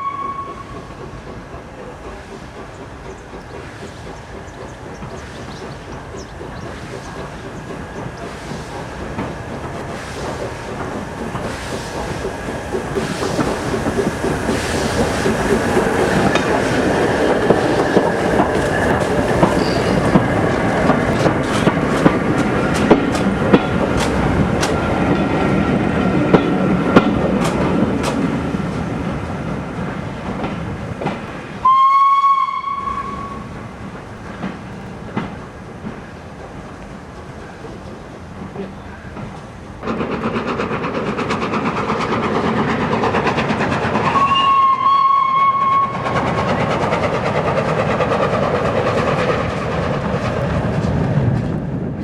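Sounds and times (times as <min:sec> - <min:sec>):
locomotive whistle: 0:00.0 - 0:01.0, 0:31.6 - 0:33.6, 0:44.0 - 0:46.1
steam locomotive passing: 0:00.0 - 0:52.0.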